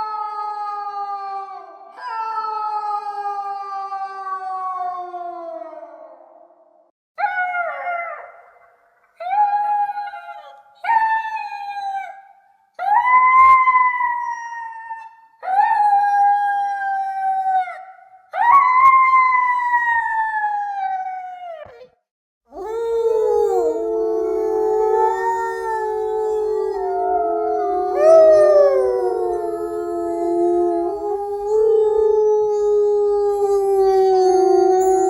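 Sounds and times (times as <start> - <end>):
wolf pups howling: 22.5 - 35.0.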